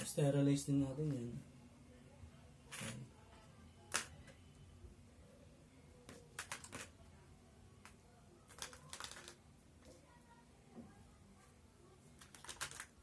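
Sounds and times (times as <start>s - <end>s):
plastic parts clicking and tapping: 6.1s - 7.0s.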